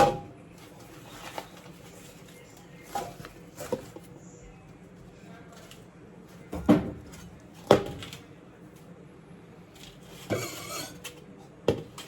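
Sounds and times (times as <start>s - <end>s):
rustling scrape: 0.6s - 4.1s, 9.8s - 11.2s.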